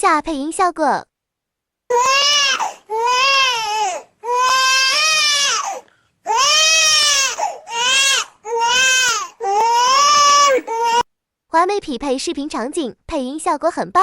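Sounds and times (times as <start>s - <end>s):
infant crying: 1.9s - 11.0s
infant breaths: 5.5s - 11.0s.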